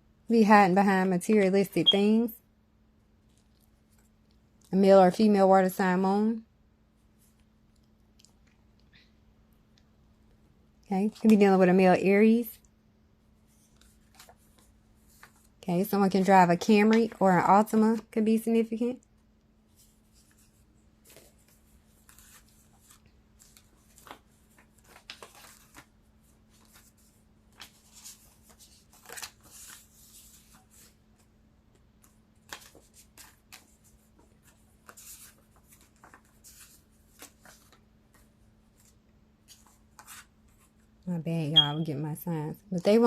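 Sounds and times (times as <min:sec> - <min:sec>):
cards rustling and clicking: 0:20.0 - 0:31.0, 0:31.7 - 0:40.8.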